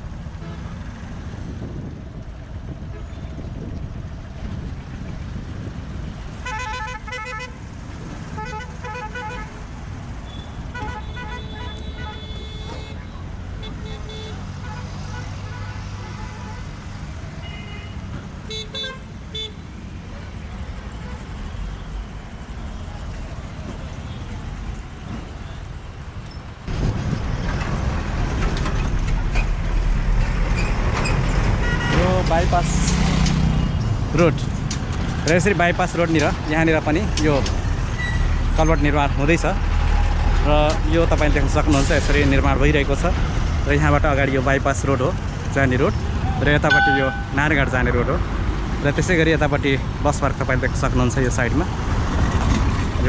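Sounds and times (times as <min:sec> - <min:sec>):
road traffic rumble: 0:00.0 - 0:53.0
vehicle horn pulsed beeps: 0:46.7 - 0:47.4.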